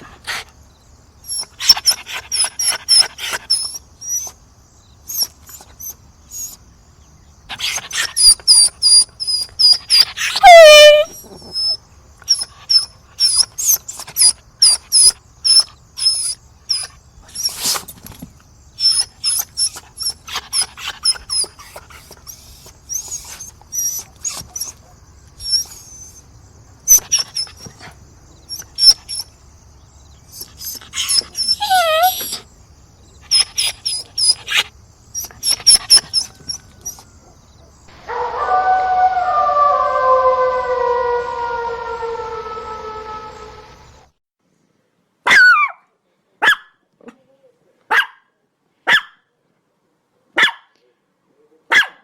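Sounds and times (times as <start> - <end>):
dog whining and yipping: 1.2 - 4.4, 5.1 - 6.6, 7.5 - 17.9, 18.8 - 26.3, 26.9 - 29.3, 30.2 - 32.5, 33.3 - 37.1
siren-like wail: 38.0 - 44.1.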